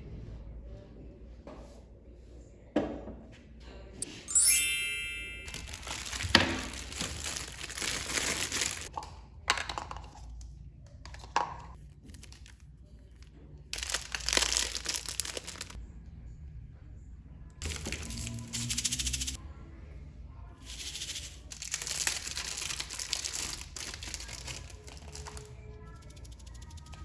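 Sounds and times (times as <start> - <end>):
packaging crinkling: 5.5 - 8.9, 12.0 - 12.6, 13.8 - 15.8, 17.6 - 18.6, 21.6 - 25.5
packaging tearing: 5.5 - 8.9, 13.8 - 15.8, 21.6 - 25.4.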